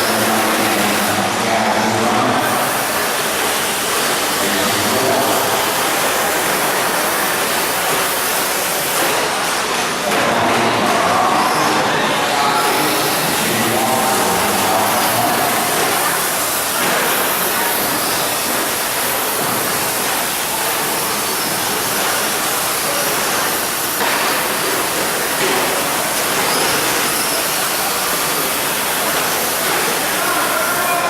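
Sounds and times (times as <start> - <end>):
rc trucks whining motors: 0.0 - 31.0.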